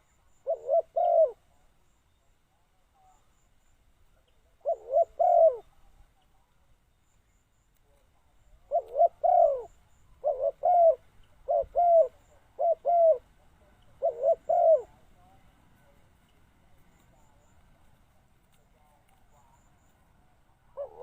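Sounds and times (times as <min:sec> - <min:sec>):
dove cooing: 0:00.0 - 0:01.6, 0:04.5 - 0:06.0, 0:08.6 - 0:15.4, 0:20.6 - 0:21.0.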